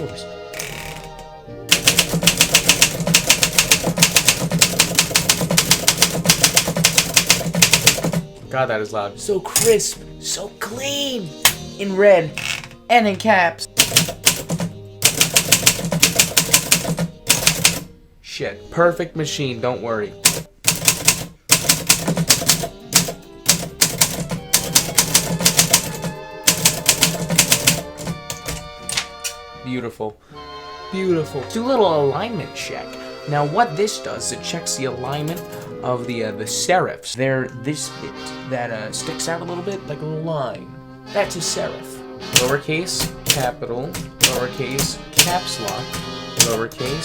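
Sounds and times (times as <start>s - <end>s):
background music: 0.0s - 47.0s
manual typewriter keystrikes: 1.7s - 8.2s, 13.8s - 17.9s, 20.2s - 29.4s, 42.3s - 47.0s.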